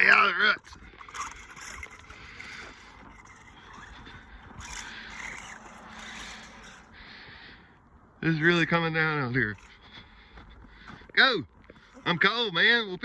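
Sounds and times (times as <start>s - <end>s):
electric motor hum: 0.0s - 7.6s
tires churning through snow: 0.0s - 13.0s.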